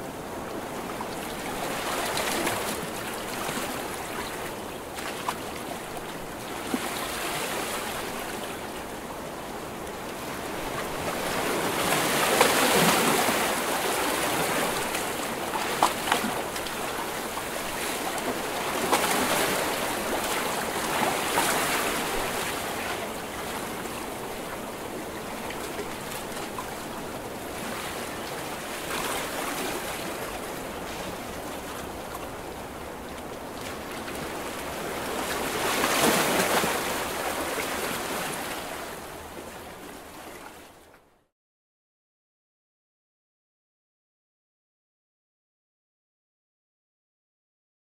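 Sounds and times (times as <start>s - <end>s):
ocean waves crashing: 10.5s - 24.3s.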